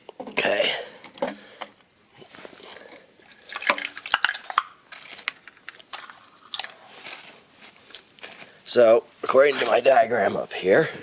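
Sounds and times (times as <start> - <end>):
plastic plugs clicking and rustling: 2.6 - 8.4.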